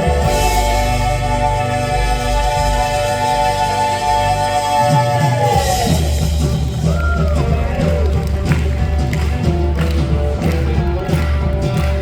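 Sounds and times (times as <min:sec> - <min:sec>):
live band playing gospel song: 0:00.0 - 0:12.0.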